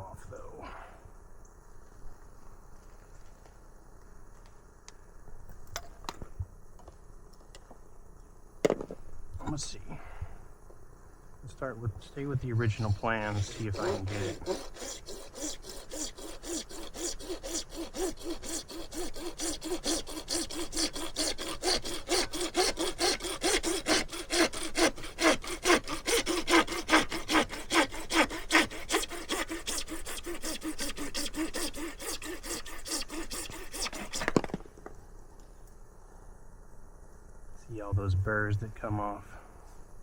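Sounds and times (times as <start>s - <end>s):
hand saw cutting plastic pipe: 12.6s - 34.6s.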